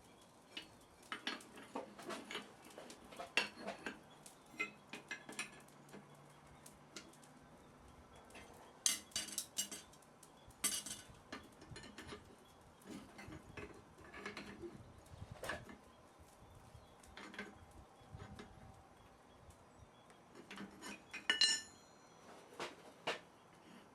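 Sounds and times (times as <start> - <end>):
metal tools clinking and clattering: 8.3 - 10.0, 10.6 - 12.3, 20.4 - 21.9.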